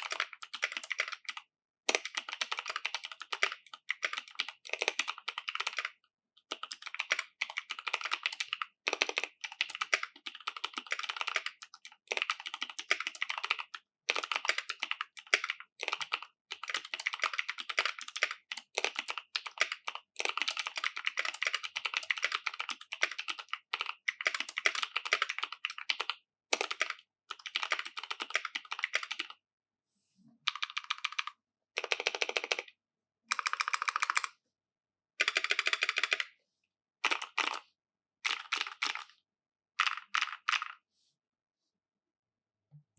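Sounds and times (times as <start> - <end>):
mechanical keyboard clicks: 30.5 - 32.7, 33.3 - 34.3, 35.2 - 36.3, 38.2 - 39.1, 39.8 - 40.8.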